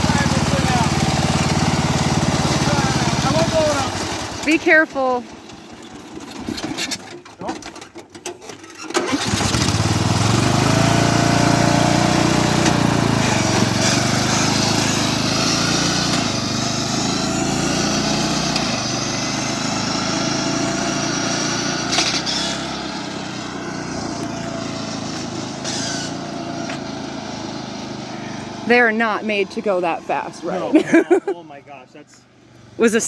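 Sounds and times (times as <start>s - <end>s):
lawn mower engine running hard: 0.0s - 31.3s.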